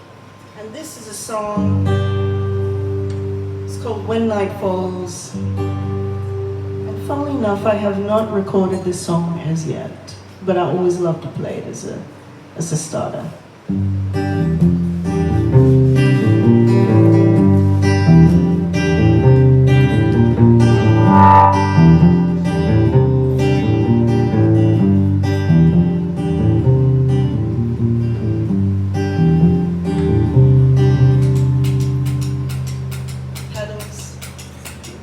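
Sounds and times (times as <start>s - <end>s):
acoustic guitar strumming chords: 1.6s - 9.0s, 13.8s - 32.9s.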